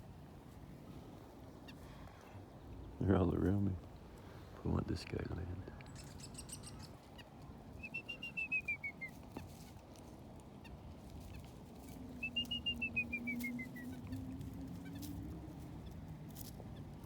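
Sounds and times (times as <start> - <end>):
songbird singing: 5.2 - 9.3, 11.3 - 16.0.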